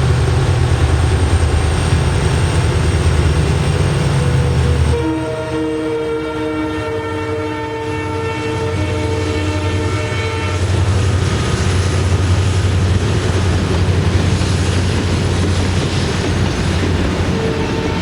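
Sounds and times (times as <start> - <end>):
diesel locomotive engine drone: 0.0 - 18.0
multi-tone locomotive horn: 3.8 - 11.5, 17.3 - 18.0
rumble and clatter of wagons: 10.8 - 18.0.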